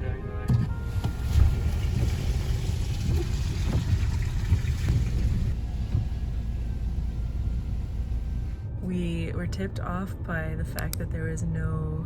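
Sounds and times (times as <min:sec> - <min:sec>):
car rumble inside cabin: 0:00.5 - 0:12.0.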